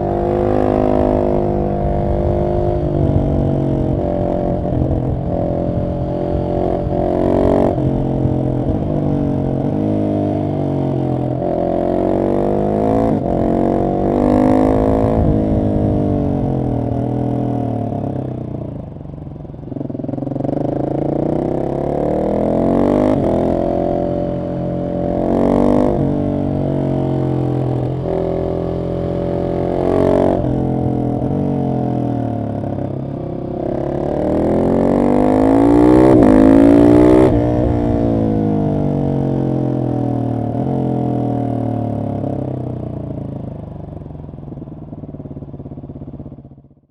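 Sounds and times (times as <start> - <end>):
motorcycle engine revving: 0.0 - 46.8.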